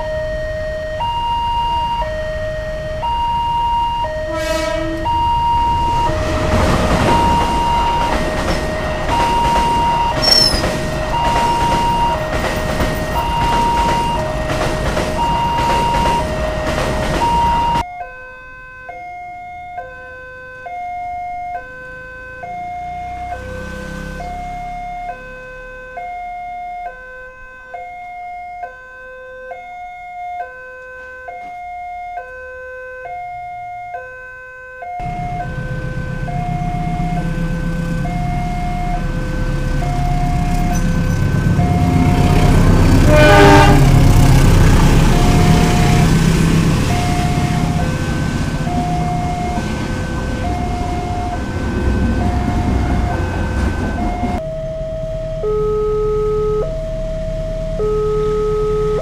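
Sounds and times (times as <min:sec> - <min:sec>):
passing train rumble: 0:00.0 - 0:17.9, 0:20.5 - 0:26.0, 0:35.0 - 0:55.5, 0:56.6 - 0:57.8
two-tone crossing warning chime: 0:00.0 - 0:59.0.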